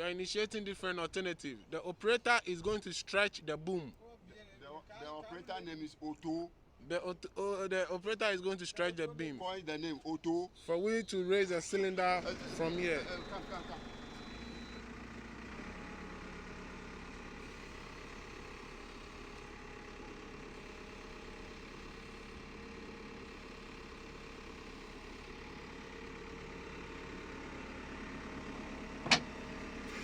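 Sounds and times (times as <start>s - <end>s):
diesel engine idling: 8.9s - 30.0s.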